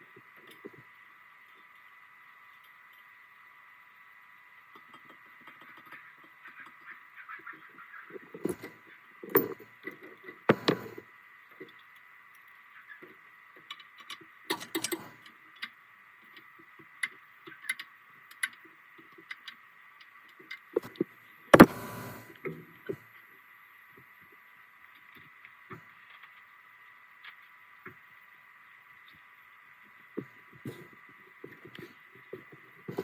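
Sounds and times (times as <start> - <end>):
faint high hum: 14.4 - 33.0.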